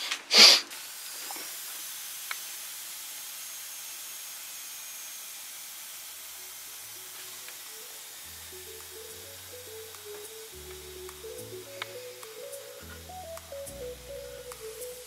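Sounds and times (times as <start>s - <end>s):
background music: 8.2s - 15.0s.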